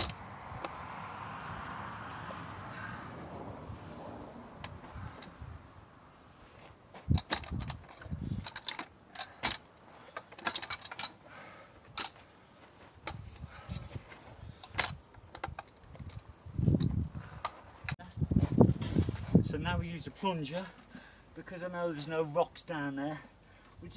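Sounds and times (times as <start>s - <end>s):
metal tools clinking: 7.0s - 11.2s, 13.0s - 18.0s
soft scuffing: 17.6s - 19.5s.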